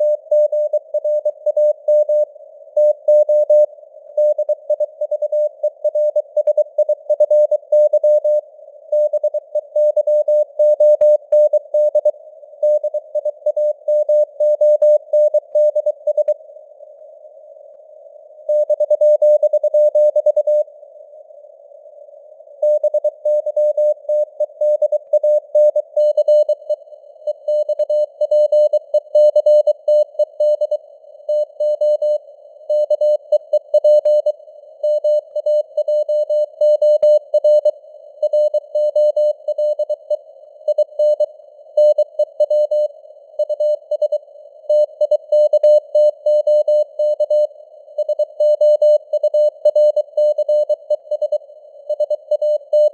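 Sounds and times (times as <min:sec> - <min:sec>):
morse code beeps: 0:22.6 - 0:32.2, 0:40.7 - 0:52.9.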